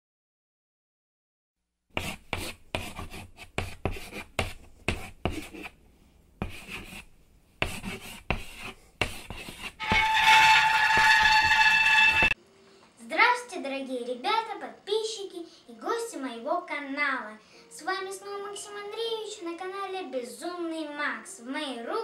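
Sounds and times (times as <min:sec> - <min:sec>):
scratching strokes: 0:02.0 - 0:05.8, 0:06.4 - 0:12.4.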